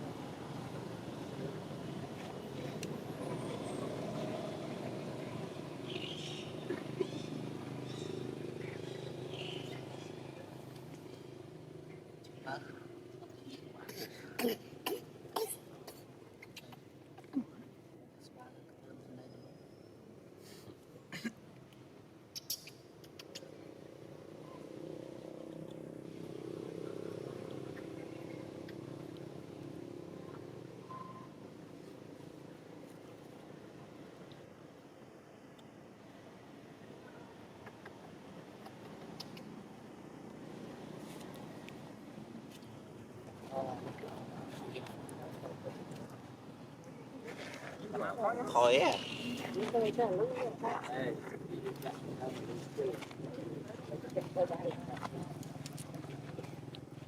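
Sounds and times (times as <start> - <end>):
faint high chirps: 30.3 - 31.4.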